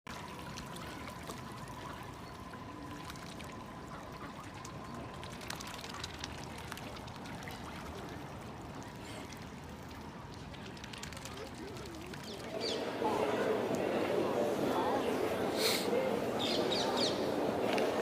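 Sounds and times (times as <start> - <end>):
water drips and plops: 0.1 - 12.7
water trickling and splashing: 0.1 - 18.0.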